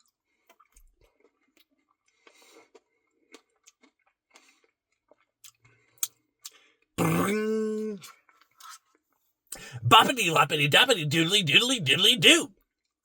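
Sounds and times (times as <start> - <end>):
soft chewing: 0.5 - 6.6, 8.0 - 9.7.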